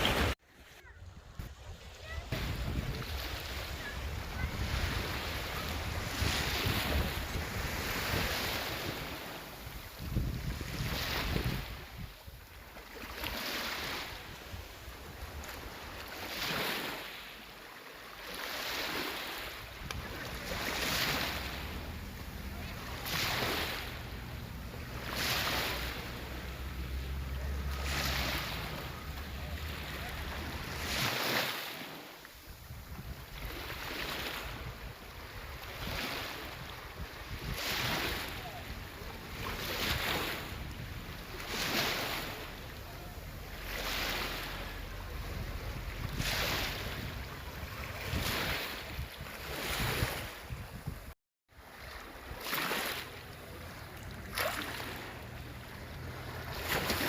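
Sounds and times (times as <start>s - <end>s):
wind buffeting microphone: 0.0s - 12.4s, 32.4s - 33.7s, 34.4s - 41.6s, 42.8s - 51.1s
sea waves washing onto shore: 0.0s - 57.0s.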